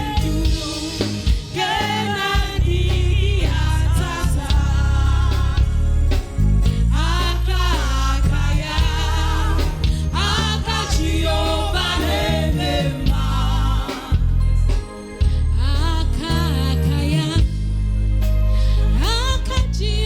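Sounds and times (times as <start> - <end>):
gospel singing voices: 0.0 - 17.7, 18.6 - 20.0
steady bass line: 0.0 - 20.0.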